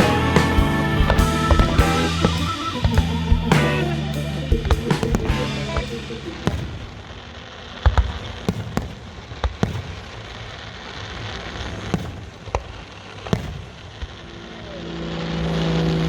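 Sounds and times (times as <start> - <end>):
propeller aircraft engine drone: 0.0 - 7.1
fireworks bangs: 4.8 - 14.7.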